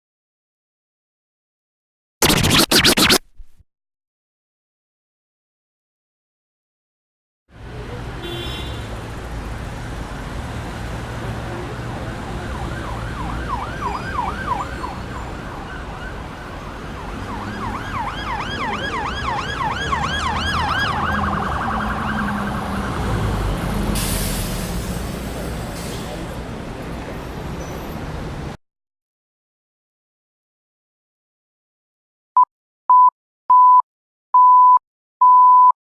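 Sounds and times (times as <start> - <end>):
low traffic rumble: 7.6 - 28.5
siren yelping: 12.1 - 16.3, 16.9 - 23.0.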